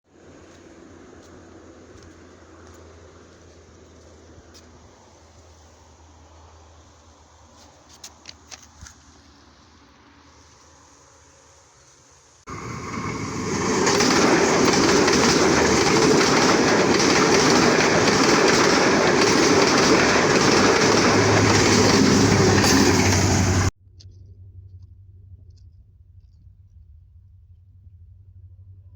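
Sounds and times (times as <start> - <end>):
loud rushing rumble: 12.5 - 23.7.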